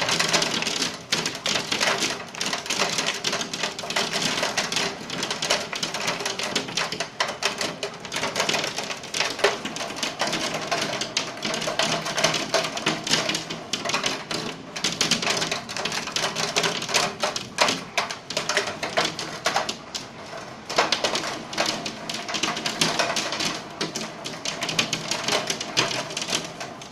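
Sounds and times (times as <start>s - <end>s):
hail clattering: 0.0s - 26.9s.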